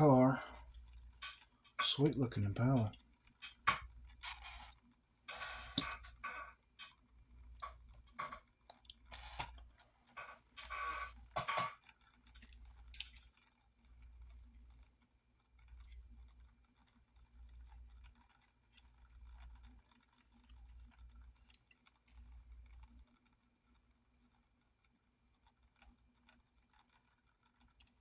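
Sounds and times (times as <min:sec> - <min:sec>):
toy car and packaging clicking: 0:07.6 - 0:13.6.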